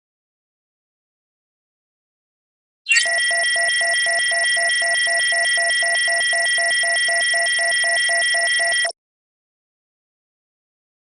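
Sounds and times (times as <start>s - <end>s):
high synthetic tones: 2.9s - 3.2s
low pulsing beep: 2.9s - 9.0s.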